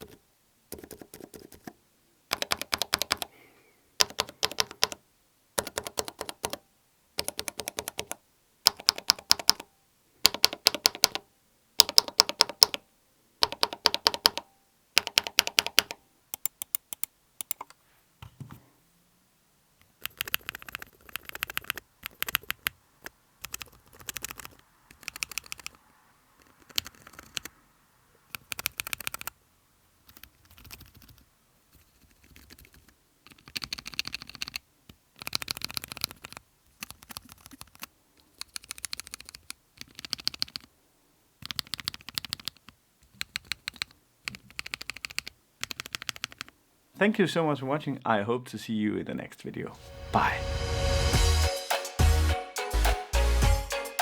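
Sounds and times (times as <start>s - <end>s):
mechanical keyboard switches clicking: 2.3s - 3.3s, 4.0s - 5.0s, 5.6s - 6.6s, 7.2s - 11.2s, 11.8s - 12.8s, 13.4s - 17.8s, 19.9s - 25.8s, 28.3s - 29.4s, 41.4s - 46.5s.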